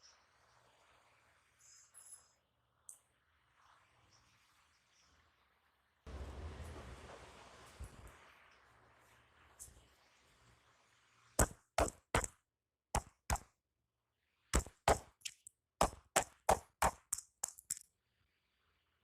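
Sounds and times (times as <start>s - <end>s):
hands slapping body: 11.4s - 12.4s, 13.0s - 13.5s, 14.6s - 17.8s.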